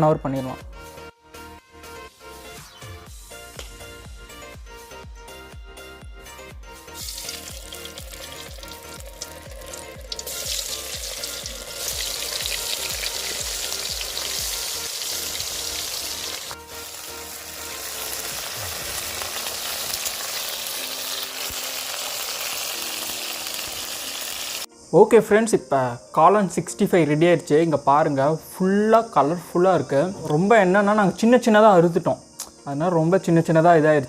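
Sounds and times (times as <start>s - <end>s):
music beat: 1.8s - 19.4s
deep-frying crackling sizzle: 6.9s - 24.7s.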